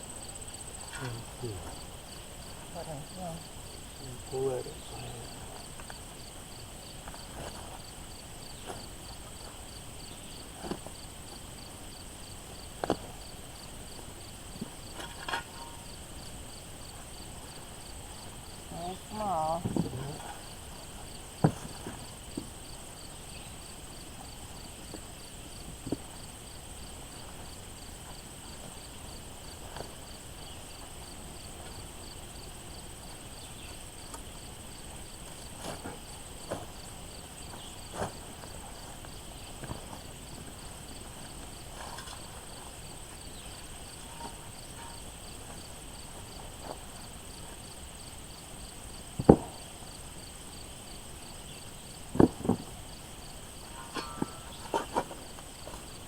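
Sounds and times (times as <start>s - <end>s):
insects trilling: 0.0s - 56.0s
short knocks and thuds: 21.4s - 22.5s, 49.2s - 49.6s, 52.1s - 52.8s.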